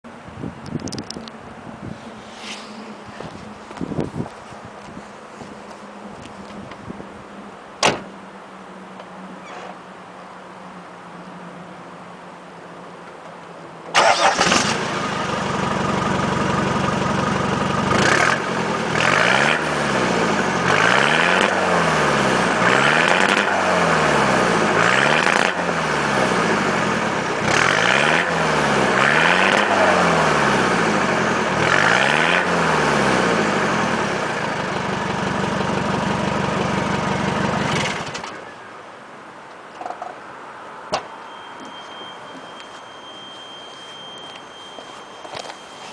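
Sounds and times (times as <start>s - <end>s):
car engine idling and revving: 13.9s - 38.6s.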